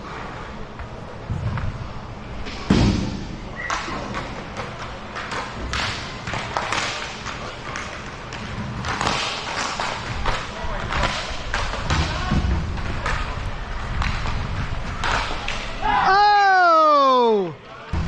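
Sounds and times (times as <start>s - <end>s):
hockey sticks and puck clacking: 3.6s - 15.9s.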